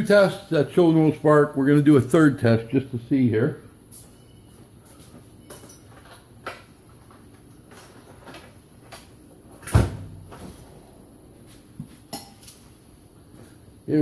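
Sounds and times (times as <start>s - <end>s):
solid thump: 9.7s - 10.6s.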